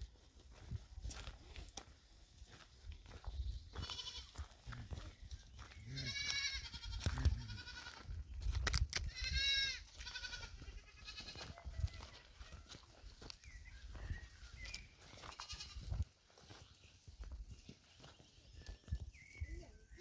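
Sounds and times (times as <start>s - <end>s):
goats bleating: 3.8s - 4.4s, 5.8s - 8.1s, 9.1s - 12.6s, 15.2s - 16.0s.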